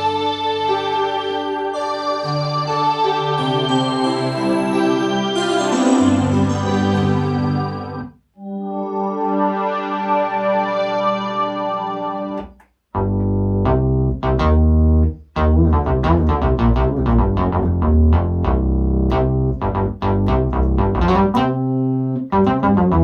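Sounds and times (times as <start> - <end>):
synthesizer sustained chord: 0.0 - 12.4
synthesizer bass line: 0.0 - 23.0
synthesizer plucked notes: 0.0 - 23.0.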